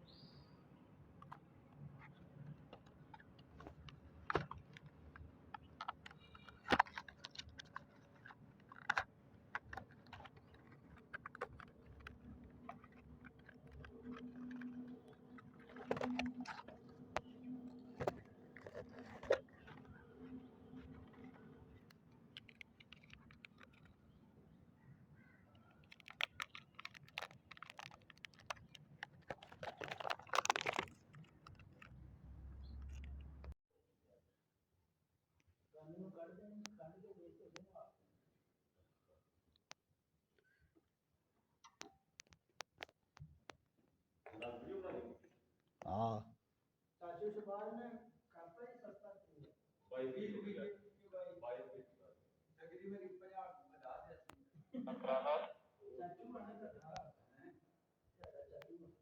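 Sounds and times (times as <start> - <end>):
hands handling packaging: 2.6 - 24.1, 25.7 - 33.6.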